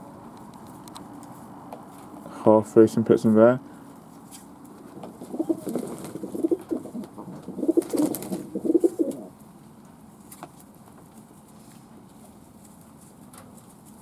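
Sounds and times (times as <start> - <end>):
pigeon cooing: 5.1 - 9.4.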